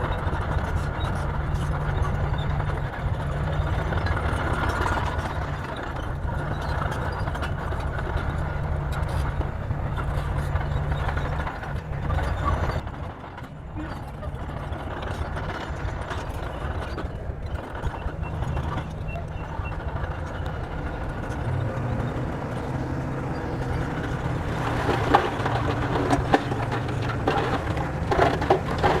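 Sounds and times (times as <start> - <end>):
diesel engine running: 0.0 - 29.0
clattering knocks: 6.4 - 29.0.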